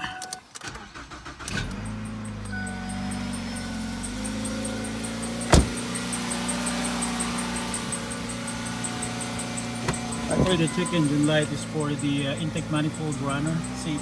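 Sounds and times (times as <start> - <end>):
car engine idling: 0.6 - 14.0
high-pitched belt chirp: 1.8 - 14.0.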